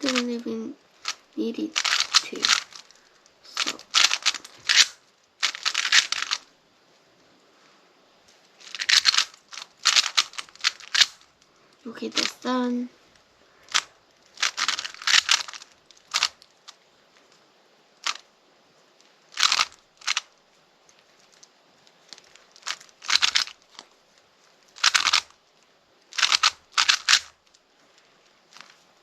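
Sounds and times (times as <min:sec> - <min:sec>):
puzzle cube clicking turns: 0:00.0 - 0:00.4, 0:01.0 - 0:06.5, 0:08.6 - 0:11.3, 0:12.0 - 0:12.5, 0:13.6 - 0:16.8, 0:18.0 - 0:18.3, 0:19.0 - 0:23.9, 0:24.7 - 0:25.4, 0:26.1 - 0:27.6, 0:28.5 - 0:28.8.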